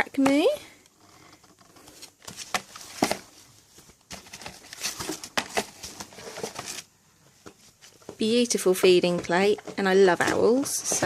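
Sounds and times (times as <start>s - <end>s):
packaging rustling and crinkling: 1.0s - 6.9s.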